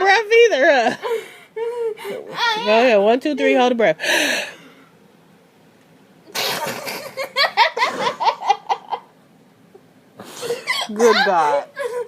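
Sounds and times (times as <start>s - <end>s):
girl laughing hysterically: 6.7s - 9.1s, 10.5s - 12.0s.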